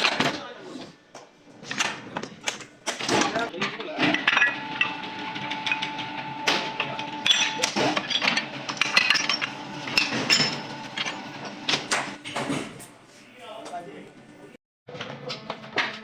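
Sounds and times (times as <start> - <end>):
machine whine: 4.0 - 12.2
hand tools knocking and clinking: 7.2 - 12.1.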